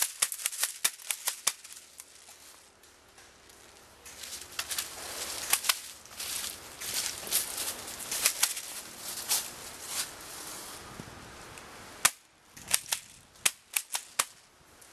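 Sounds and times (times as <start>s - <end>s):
sharp cracks: 0.0s - 2.2s, 4.0s - 6.1s, 8.1s - 8.8s, 12.0s - 14.5s
twigs snapping: 0.0s - 8.8s, 12.0s - 14.4s
footsteps through leaves: 3.4s - 10.9s.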